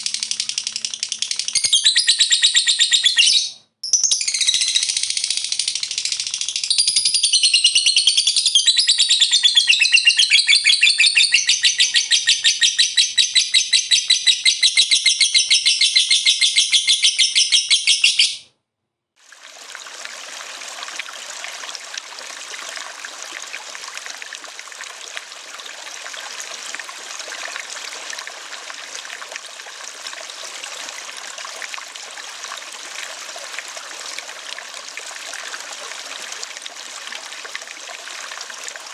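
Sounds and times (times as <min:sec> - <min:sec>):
bird trilling: 0:00.0 - 0:05.7, 0:07.2 - 0:18.4
running stream water: 0:19.2 - 0:38.9.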